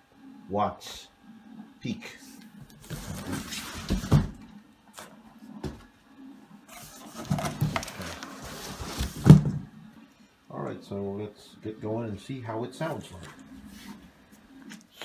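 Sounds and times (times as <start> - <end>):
rustling and scraping: 2.6 - 5.9, 6.7 - 9.7, 12.8 - 14.9.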